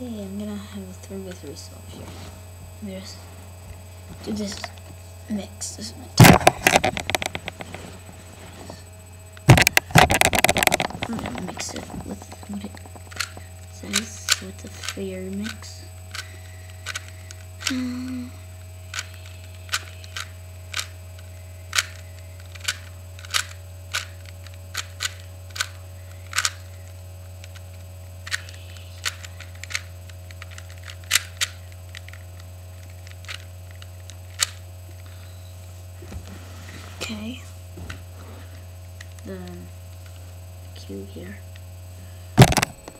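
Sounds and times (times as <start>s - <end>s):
low mains hum: 0.0s - 42.9s
puzzle cube turning clicks: 6.2s - 8.0s, 9.5s - 17.8s, 18.9s - 34.6s, 42.4s - 42.9s.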